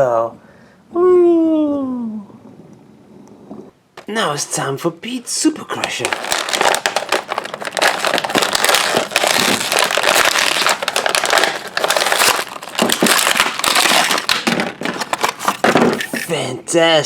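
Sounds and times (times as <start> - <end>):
packaging tearing and crinkling: 5.7 - 16.3.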